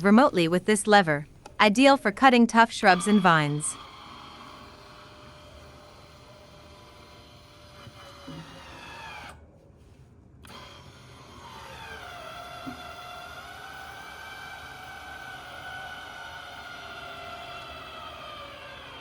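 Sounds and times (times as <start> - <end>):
electric actuator motor whining: 2.8 - 9.4, 10.4 - 19.0.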